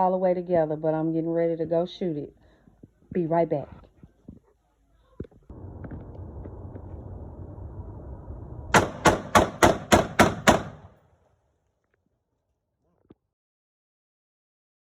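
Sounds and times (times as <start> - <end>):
steady low rumble: 5.3 - 11.0
pistol shots: 8.7 - 11.0.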